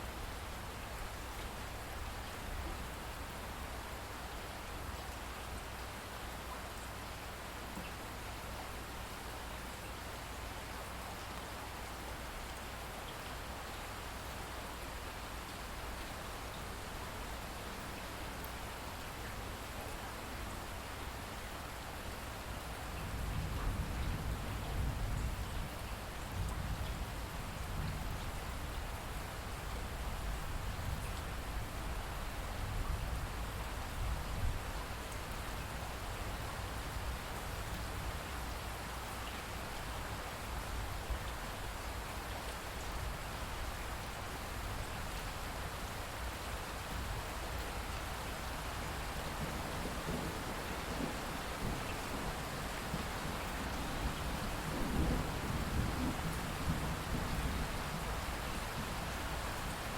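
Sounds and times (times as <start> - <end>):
heavy rain pattering: 40.5 - 59.9.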